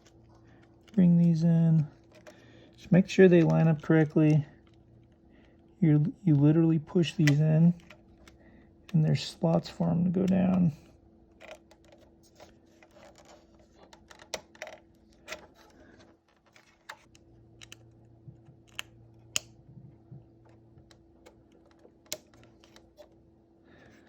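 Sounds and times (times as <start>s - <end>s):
faint steady hum: 0.0s - 24.0s
plastic parts clicking: 1.8s - 5.5s, 11.3s - 17.9s, 20.4s - 23.2s.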